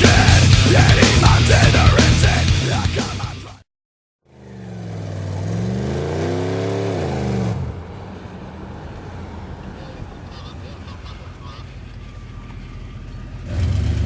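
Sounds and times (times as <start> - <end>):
heavy rock music: 0.0 - 3.6
vehicle engine revving: 4.3 - 14.0.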